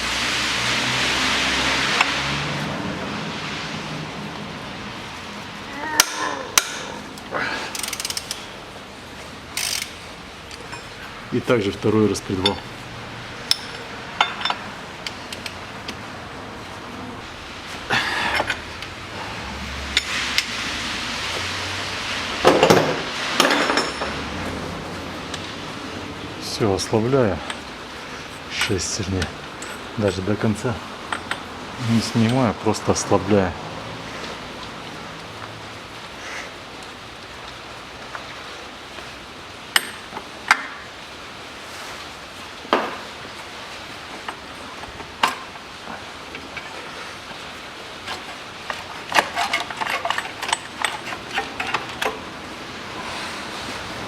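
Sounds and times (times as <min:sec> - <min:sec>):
hand tools clinking on metal: 0:09.5 - 0:12.8, 0:13.4 - 0:14.7, 0:23.4 - 0:24.2, 0:27.3 - 0:30.5, 0:31.1 - 0:32.5, 0:48.0 - 0:52.2
metal clatter: 0:48.0 - 0:52.2.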